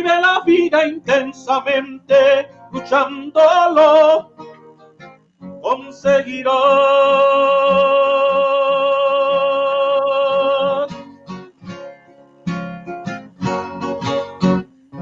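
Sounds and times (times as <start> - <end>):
man singing: 0.0 - 4.3, 5.6 - 11.0
acoustic guitar strumming: 0.0 - 15.0.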